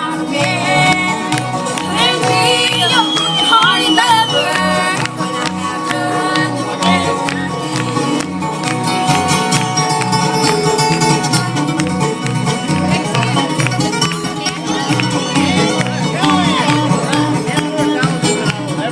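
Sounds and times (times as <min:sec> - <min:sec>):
bluegrass band playing: 0:00.0 - 0:18.9.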